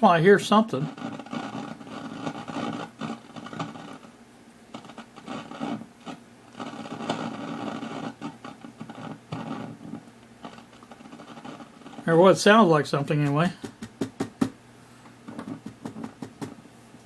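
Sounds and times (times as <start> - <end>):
radio static and crackle: 0.0 - 13.6.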